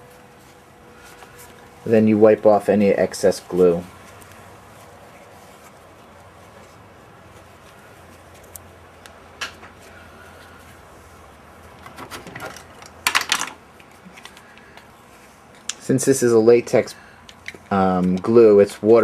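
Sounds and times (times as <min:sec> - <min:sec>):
cloth rubbing strokes: 0:00.0 - 0:11.8.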